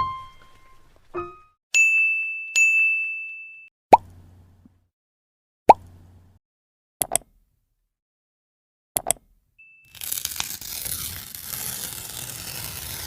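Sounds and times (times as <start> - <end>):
mouse double clicks: 7.0 - 7.3
short high beep: 9.6 - 10.0.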